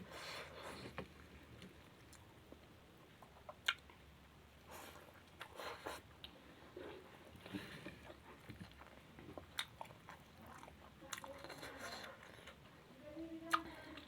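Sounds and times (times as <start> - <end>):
chewing and biting food: 7.3 - 12.7.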